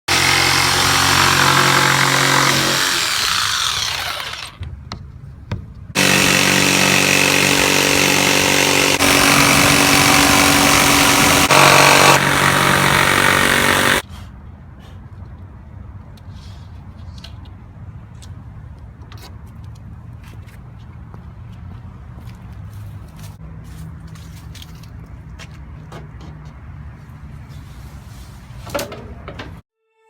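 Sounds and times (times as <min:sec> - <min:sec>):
power tool running: 0:00.1 - 0:04.6, 0:06.0 - 0:14.0.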